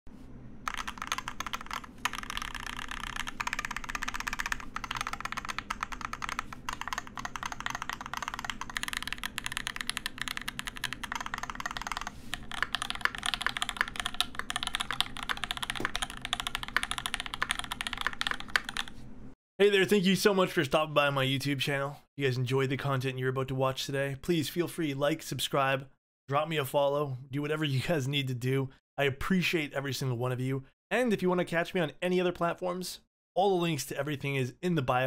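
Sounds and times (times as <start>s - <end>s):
mechanical keyboard typing: 0.7s - 18.9s.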